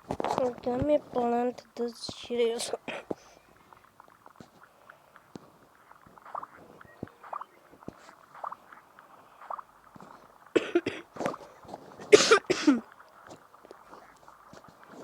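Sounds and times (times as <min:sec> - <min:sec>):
person coughing: 0:02.9 - 0:03.2, 0:10.6 - 0:11.2, 0:12.0 - 0:12.9.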